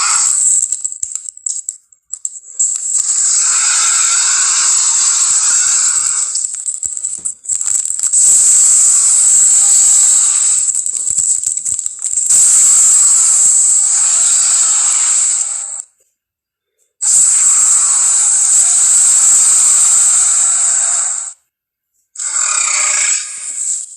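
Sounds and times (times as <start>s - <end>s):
monster reptile hissing: 0.0s - 0.6s, 2.5s - 6.6s, 7.6s - 11.0s, 12.3s - 15.8s, 17.0s - 21.4s, 22.2s - 23.9s.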